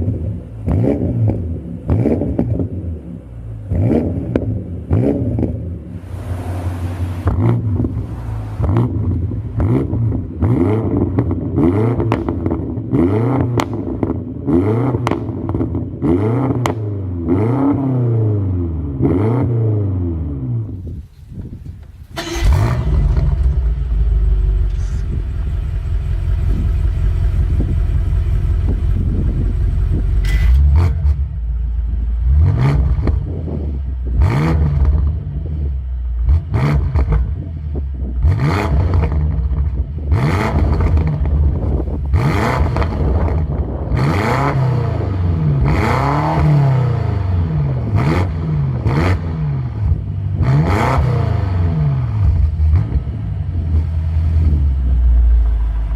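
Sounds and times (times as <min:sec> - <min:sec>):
car exhaust revving: 0:00.0 - 0:20.7, 0:22.1 - 0:55.9
exhaust cracks: 0:03.7 - 0:15.9, 0:20.7 - 0:31.4, 0:36.2 - 0:55.9.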